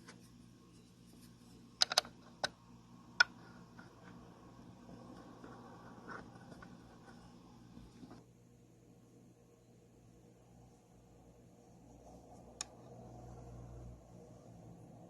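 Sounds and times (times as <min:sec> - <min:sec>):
hard parts clicking and knocking: 0:01.8 - 0:02.6.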